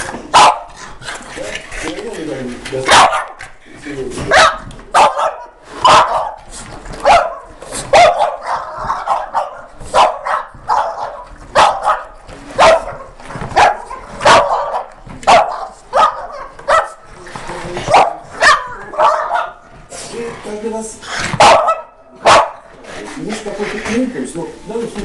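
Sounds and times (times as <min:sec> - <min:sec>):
dog barking: 0:00.3 - 0:00.8, 0:02.9 - 0:03.4, 0:04.3 - 0:17.1, 0:17.9 - 0:19.7, 0:21.3 - 0:22.7.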